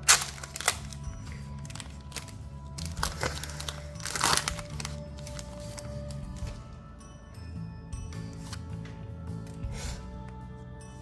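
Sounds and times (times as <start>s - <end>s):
foil packaging crinkling: 0.0s - 6.6s
soft background music: 0.0s - 11.0s.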